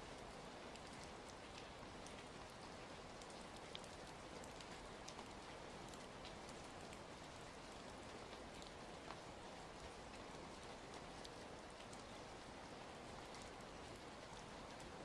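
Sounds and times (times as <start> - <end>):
steady rain: 0.0 - 15.0
wood fire crackling: 0.0 - 15.0.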